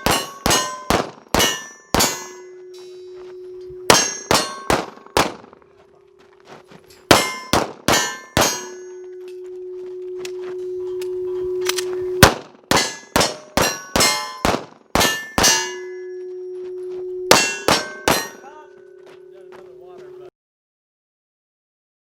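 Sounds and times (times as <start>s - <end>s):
rapid pistol shots: 0.0s - 2.2s, 3.9s - 5.6s, 7.1s - 8.6s, 12.2s - 15.6s
bullets clanging on steel target: 0.0s - 5.7s, 6.9s - 9.6s, 10.6s - 16.6s, 17.3s - 19.0s
steady ringing tone: 0.0s - 20.3s.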